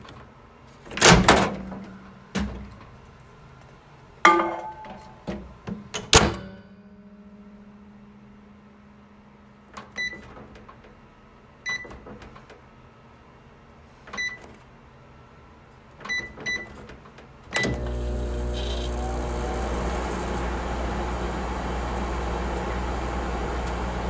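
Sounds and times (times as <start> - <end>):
keypad beeps: 11.7 - 11.9, 14.2 - 14.4, 16.1 - 16.7.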